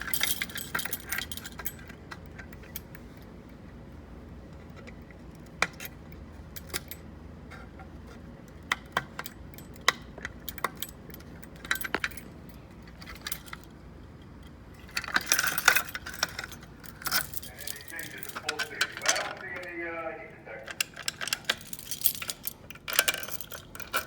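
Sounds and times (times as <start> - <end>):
metal objects clinking: 0.0 - 1.9, 9.2 - 13.7, 14.8 - 19.5, 20.8 - 24.0
keys jangling: 0.0 - 3.0, 5.4 - 7.1, 9.0 - 13.8, 14.4 - 19.7, 20.7 - 24.0.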